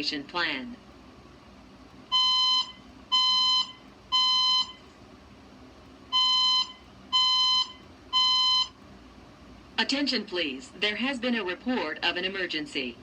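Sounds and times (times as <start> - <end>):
evacuation alarm beeps: 2.1 - 4.9, 6.1 - 8.8
spoken messages over speaker: 9.8 - 13.0.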